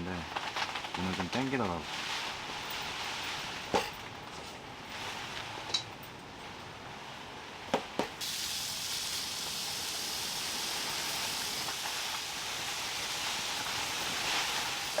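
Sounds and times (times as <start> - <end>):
rain hissing: 8.2 - 15.0.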